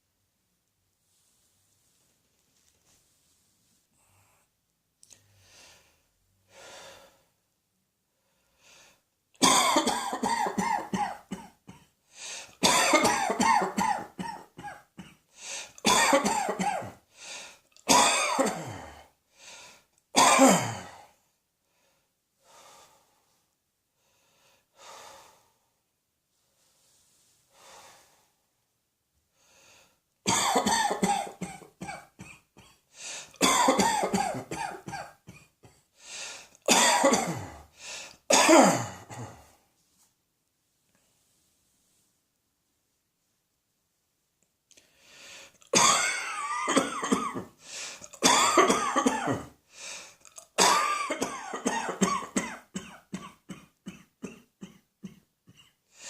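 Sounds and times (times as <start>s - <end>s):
faint breaths: 2.6s - 7.4s, 8.1s - 9.1s, 12.1s - 12.6s, 15.3s - 15.8s, 17.1s - 17.7s, 18.9s - 19.9s, 21.0s - 25.8s, 26.4s - 28.6s, 29.3s - 30.0s, 32.9s - 33.4s, 35.9s - 36.6s, 37.6s - 38.3s, 44.7s - 45.7s, 47.6s - 48.2s, 49.6s - 50.3s
person coughing hard: 9.4s - 11.9s, 12.6s - 15.2s, 15.8s - 17.0s, 17.9s - 19.1s, 20.2s - 21.1s, 30.3s - 32.8s, 33.4s - 35.8s, 36.7s - 37.7s, 38.3s - 39.5s, 45.6s - 47.5s, 48.1s - 49.6s, 50.4s - 55.8s.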